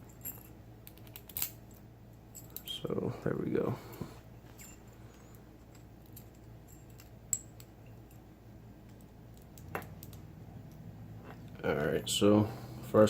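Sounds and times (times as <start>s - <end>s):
metallic clicks of padlock parts: 0.2s - 2.7s, 4.6s - 8.2s, 8.9s - 10.8s.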